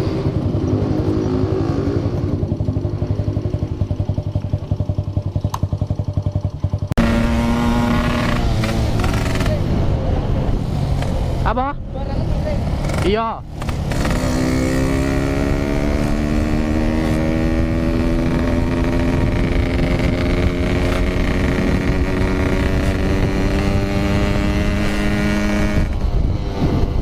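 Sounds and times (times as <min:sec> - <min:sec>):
motorcycle engine at high revs: 0:00.0 - 0:10.0, 0:12.5 - 0:27.0
wind noise on microphone: 0:12.8 - 0:27.0.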